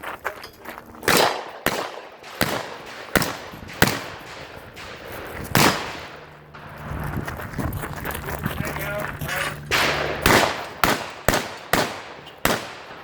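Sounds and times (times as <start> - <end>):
shotgun shots: 1.0 - 6.9, 9.6 - 13.0.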